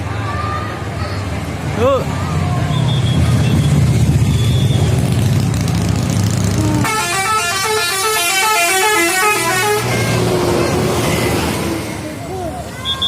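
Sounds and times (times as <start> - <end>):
bus engine rumbling: 0.0 - 13.0
musical bus air horn tune: 6.8 - 11.8.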